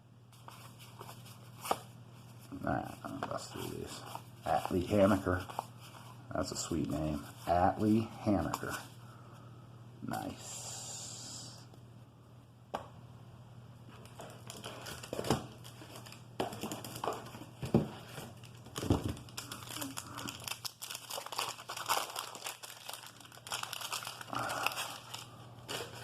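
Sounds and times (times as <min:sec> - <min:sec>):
wax paper crinkling and tearing: 0:18.0 - 0:26.0.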